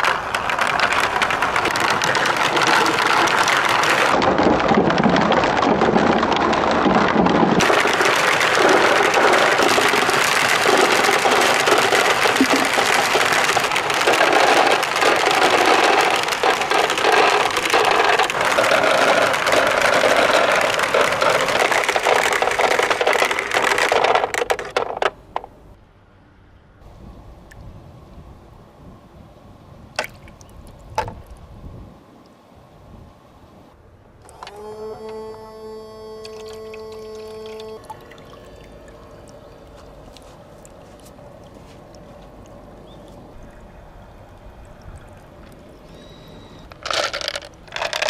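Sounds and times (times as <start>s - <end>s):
marbles rattling down plastic slide: 0.0s - 25.5s, 46.0s - 48.0s
faint trickle: 36.2s - 46.6s.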